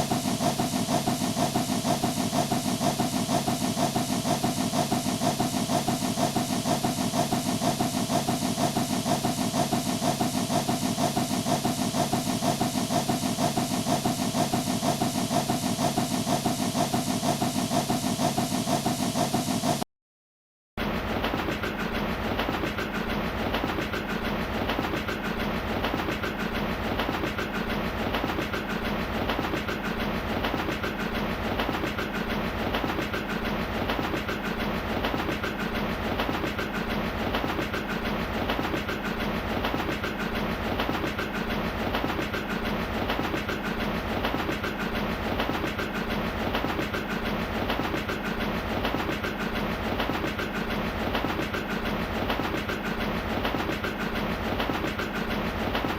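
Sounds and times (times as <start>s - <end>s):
train wheels clicking on rails: 20.8s - 55.9s.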